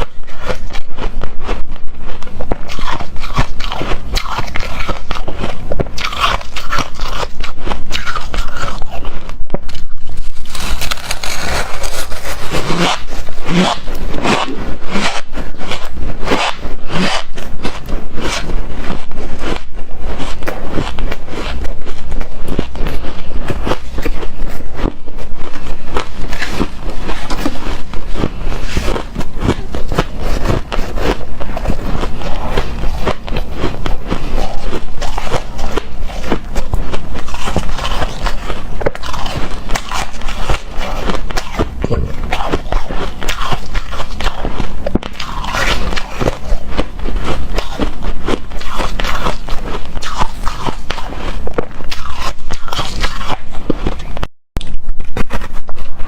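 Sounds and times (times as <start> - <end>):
crunchy bites of shaved ice: 9.7 - 18.4, 25.9 - 54.0.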